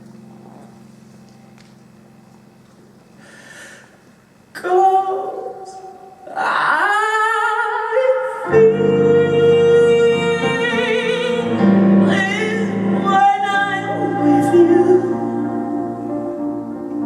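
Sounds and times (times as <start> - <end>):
low sustained instrumental accompaniment: 0.0 - 3.3, 8.6 - 17.0
operatic singing with vibrato: 4.6 - 17.0.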